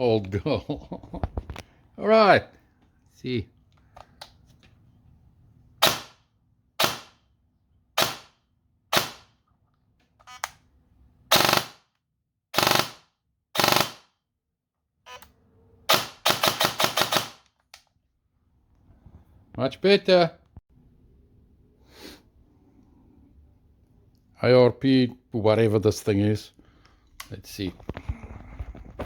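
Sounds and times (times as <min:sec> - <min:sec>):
airsoft gun shots: 0:05.8 - 0:06.2, 0:06.8 - 0:07.2, 0:08.0 - 0:08.3, 0:08.9 - 0:09.3, 0:11.3 - 0:11.8, 0:12.6 - 0:13.0, 0:13.6 - 0:14.0.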